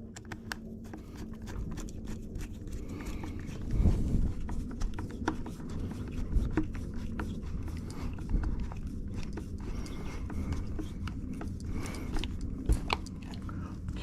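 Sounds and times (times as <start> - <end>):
small clicks and taps: 0.0 - 1.9
low rumbling handling noise: 0.0 - 14.0.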